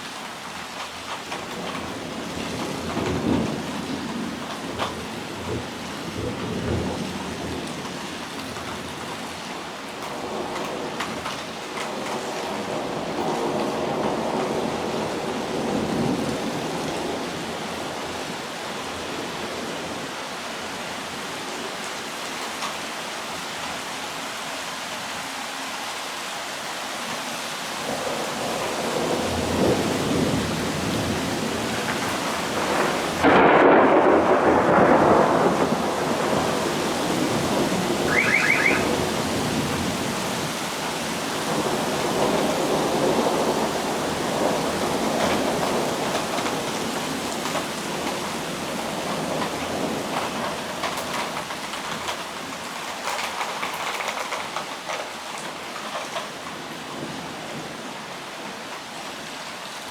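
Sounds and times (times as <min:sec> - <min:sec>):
steady rain: 0:00.0 - 0:59.9
loud close thunderclap: 0:27.9 - 0:40.2
thunder rumbling: 0:27.9 - 0:40.9.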